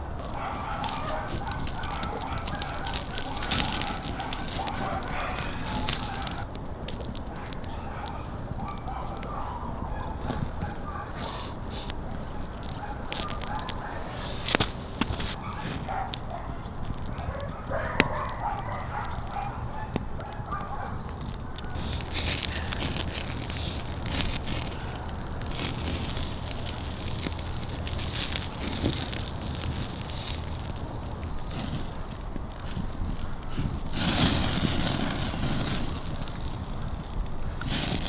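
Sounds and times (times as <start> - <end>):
campfire crackling: 0.0 - 38.0
fowl calling: 0.2 - 6.4.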